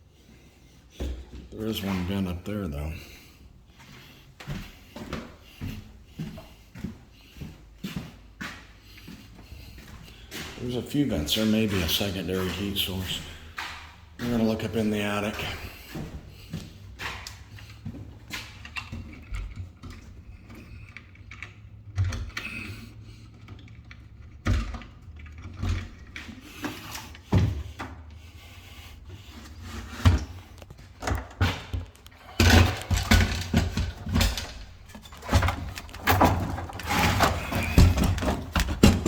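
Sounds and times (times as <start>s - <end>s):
rustling and handling noise: 23.2s - 39.0s
knocks and thuds: 31.2s - 39.0s.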